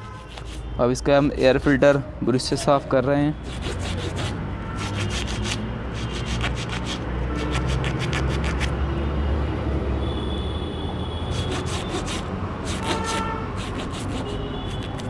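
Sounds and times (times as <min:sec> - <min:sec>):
brush scrubbing air filter: 0:11.4 - 0:15.0.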